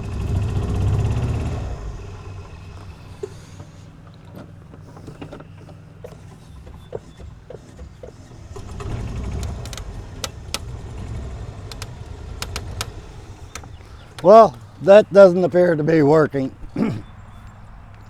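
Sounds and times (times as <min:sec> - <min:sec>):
golf cart motor straining: 0:00.0 - 0:18.0
sharp clicks and creaks: 0:02.3 - 0:15.0.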